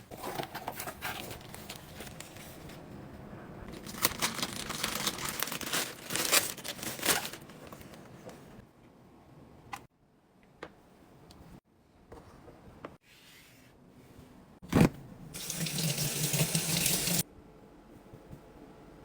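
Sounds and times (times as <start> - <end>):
packaging crinkling and tearing: 3.7 - 8.2.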